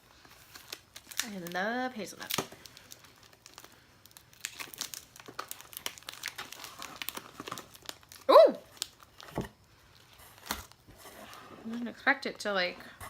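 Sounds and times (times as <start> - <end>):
snack packaging crinkling: 0.0 - 11.0
person exclaiming: 8.3 - 8.7.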